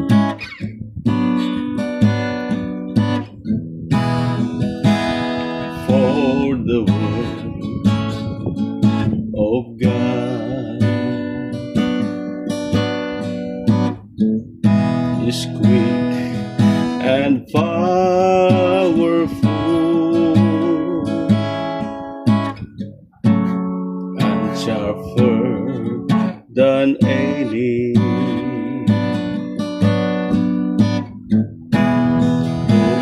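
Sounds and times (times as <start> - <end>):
strummed acoustic guitar: 0.0 - 33.0
person singing: 5.7 - 7.8, 9.3 - 11.5, 15.1 - 21.6, 24.2 - 29.4, 32.4 - 33.0.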